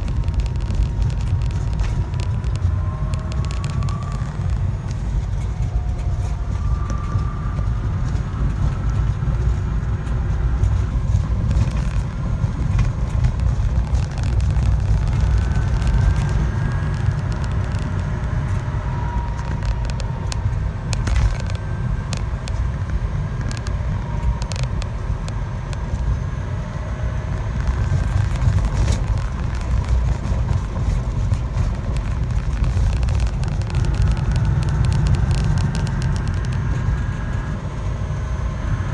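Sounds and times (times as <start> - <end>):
small clicks: 0.0 - 7.1, 27.6 - 37.2
vehicle engine rumble: 0.0 - 38.9.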